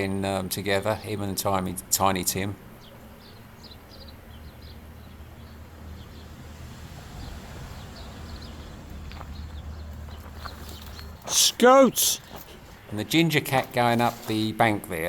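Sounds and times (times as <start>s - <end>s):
small birds chirping: 0.0s - 15.0s
steady low rumble: 4.4s - 11.3s.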